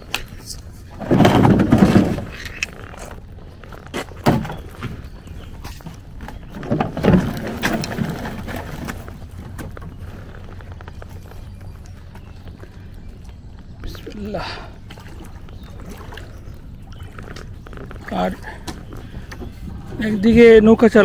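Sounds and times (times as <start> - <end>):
folding boat knocking and scraping: 0.8 - 3.2, 3.9 - 11.4.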